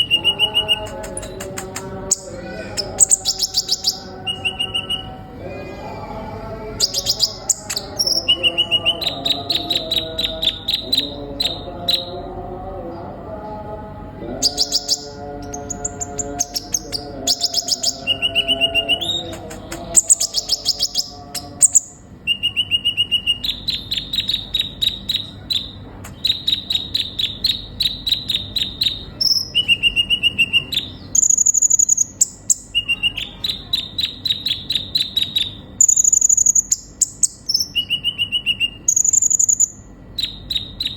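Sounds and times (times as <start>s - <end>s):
bird singing trilled phrases: 0.0s - 5.2s, 6.8s - 12.2s, 14.2s - 40.9s.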